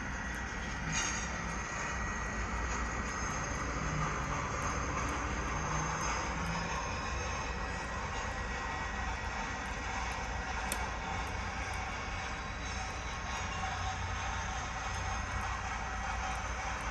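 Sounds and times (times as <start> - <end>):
railway wheels rumbling on rails: 0.0 - 16.9
high wheel flange squeal: 0.8 - 4.9.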